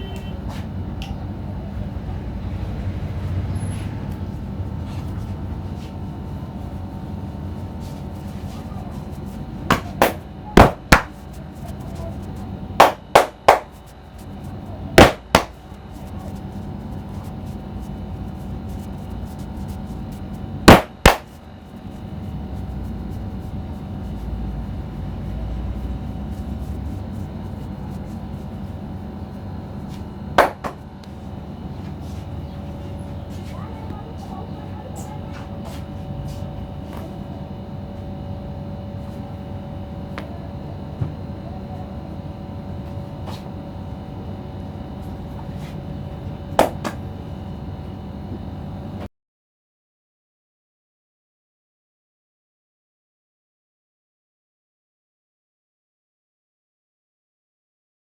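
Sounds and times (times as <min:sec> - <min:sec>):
steady background hum: 0:00.0 - 0:49.1
hands smacking during head massage: 0:15.0 - 0:15.6, 0:20.7 - 0:21.4.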